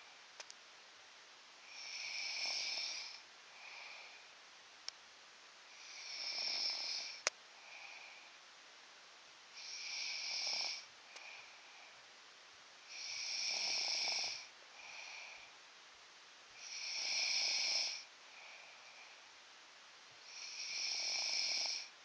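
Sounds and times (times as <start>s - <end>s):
soft breath sound: 1.6s - 4.5s, 5.6s - 8.6s, 9.5s - 15.8s, 16.5s - 22.0s
person snoring loudly: 1.7s - 4.1s, 5.7s - 8.0s, 9.6s - 11.4s, 12.9s - 15.4s, 16.6s - 18.6s, 20.2s - 21.9s.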